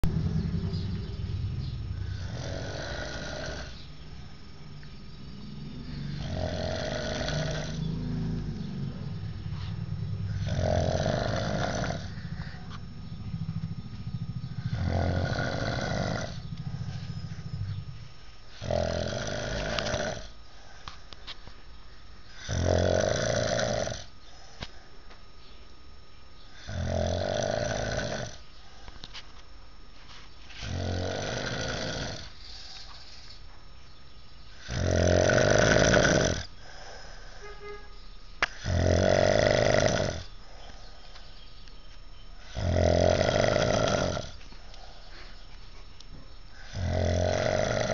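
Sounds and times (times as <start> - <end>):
man snoring: 1.9 - 4.0, 5.5 - 9.3, 10.2 - 12.8, 14.4 - 17.8, 18.5 - 20.4, 22.3 - 24.1, 26.5 - 28.4, 30.6 - 32.8, 34.5 - 37.3, 38.5 - 40.4, 42.4 - 44.9, 46.5 - 47.9.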